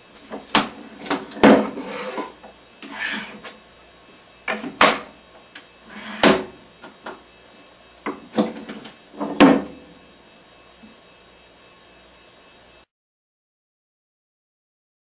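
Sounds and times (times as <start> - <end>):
vise sliding: 0.3 - 3.6, 5.8 - 6.6.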